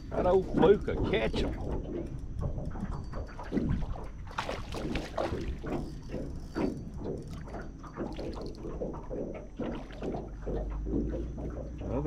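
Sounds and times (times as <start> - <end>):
water splashing: 3.4 - 6.2, 7.4 - 12.0.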